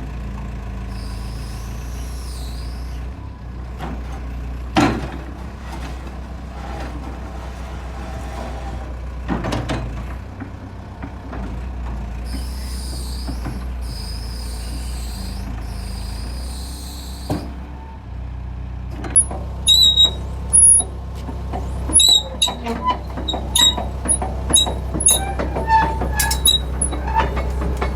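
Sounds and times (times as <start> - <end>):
diesel engine rumble: 0.0 - 27.9
sharp high squeaks: 12.3 - 17.4, 19.1 - 20.9, 21.6 - 27.9
hiss: 12.3 - 17.5
metallic clanks: 19.1 - 27.9.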